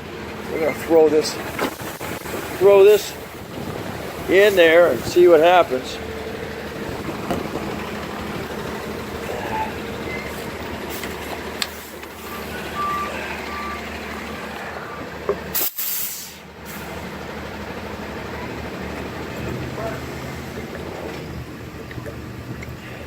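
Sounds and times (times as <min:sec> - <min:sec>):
traffic noise: 0:00.0 - 0:23.0
burst of hiss: 0:15.6 - 0:17.0.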